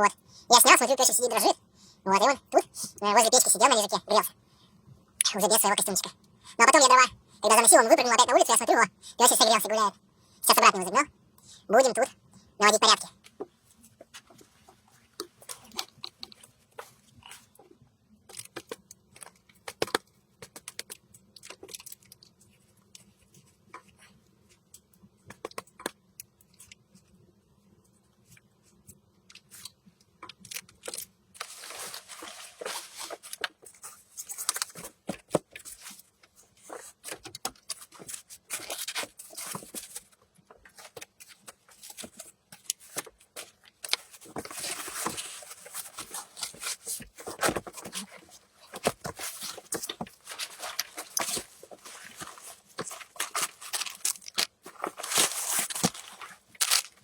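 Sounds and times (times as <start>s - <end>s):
rustling and scraping: 30.9s - 57.0s.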